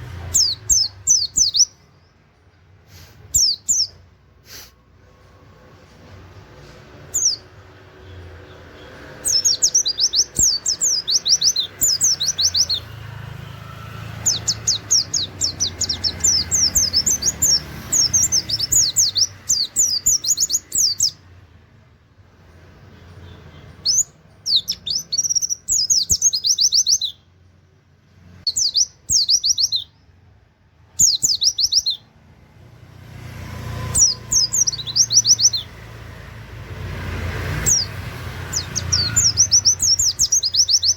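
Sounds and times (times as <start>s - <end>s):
bird singing rapid high notes: 0.0s - 2.2s, 3.2s - 4.0s, 7.0s - 21.4s, 22.9s - 27.3s, 28.4s - 30.2s, 30.8s - 32.2s, 33.7s - 36.1s, 37.0s - 40.9s.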